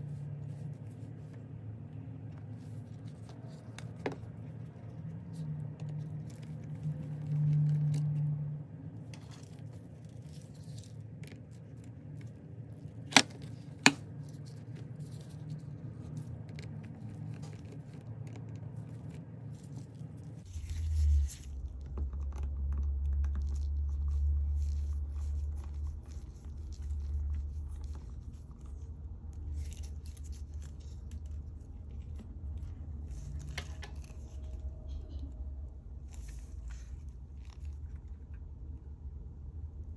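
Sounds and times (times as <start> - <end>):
small handling noises: 0.0 - 39.9.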